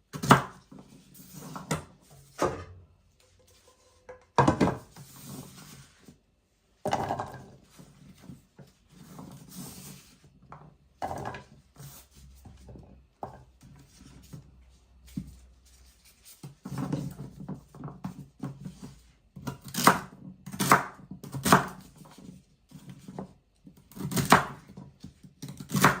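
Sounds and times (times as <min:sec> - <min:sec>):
knife chopping celery on board: 0:00.1 - 0:00.6, 0:19.4 - 0:22.0, 0:23.8 - 0:26.0.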